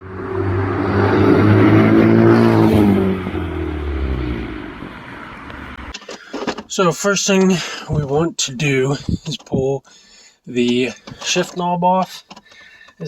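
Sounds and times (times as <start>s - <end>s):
car engine revving: 0.0s - 6.7s.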